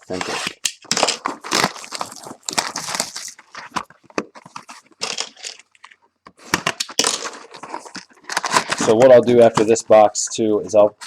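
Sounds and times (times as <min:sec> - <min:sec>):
cardboard and wrapping tearing: 0:00.1 - 0:03.9, 0:07.1 - 0:09.0.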